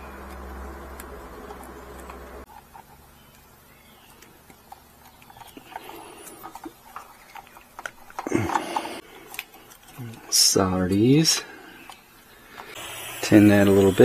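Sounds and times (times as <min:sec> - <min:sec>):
steady hum: 0:00.0 - 0:02.5
hands handling wires and tools: 0:04.1 - 0:12.8.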